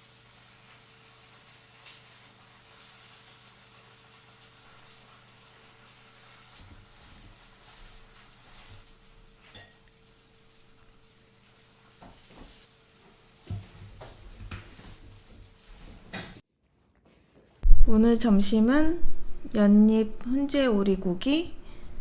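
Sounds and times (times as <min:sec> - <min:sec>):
food sizzling in a pan: 0:00.0 - 0:16.4.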